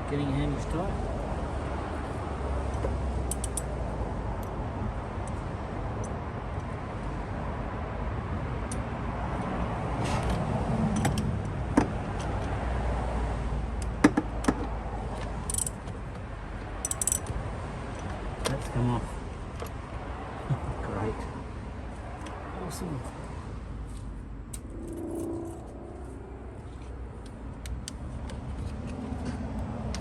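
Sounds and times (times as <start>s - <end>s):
metallic clicks of hand tools: 3.3s - 3.7s, 15.4s - 15.8s, 16.8s - 18.7s
low rumble: 24.2s - 27.4s.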